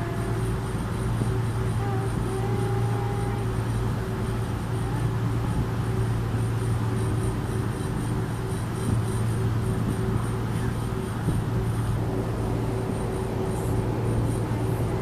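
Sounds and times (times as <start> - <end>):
ferry engine droning: 0.0 - 15.0.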